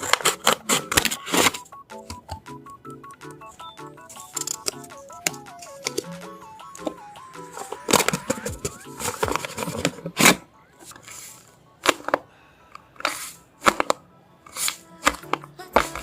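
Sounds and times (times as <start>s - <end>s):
paper packaging crinkling: 0.0s - 1.7s, 7.6s - 11.4s
soft background music: 0.0s - 16.0s.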